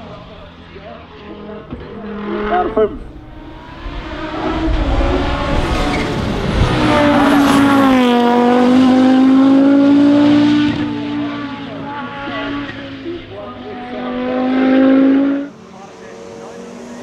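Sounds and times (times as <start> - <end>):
race car passing at full throttle: 0.0 - 17.0.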